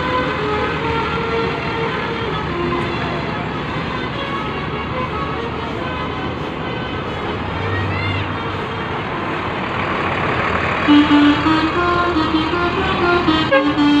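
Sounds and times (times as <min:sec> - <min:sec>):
musical bus horn tune: 0:00.0 - 0:10.2, 0:10.8 - 0:14.0
bus traffic noise: 0:00.0 - 0:14.0.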